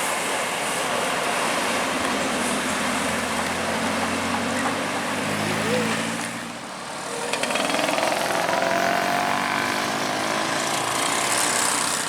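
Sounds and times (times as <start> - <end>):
bus diesel engine clattering: 7.1 - 8.9.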